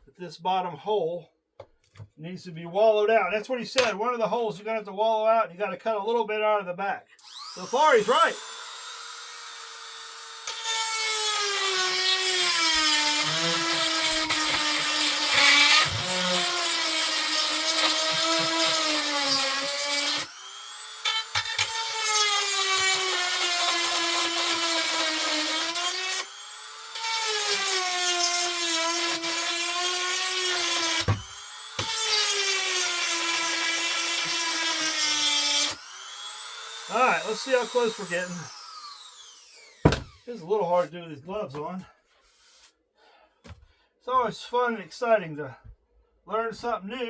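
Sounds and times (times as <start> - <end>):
electric drill drilling metal: 7.2 - 40.3.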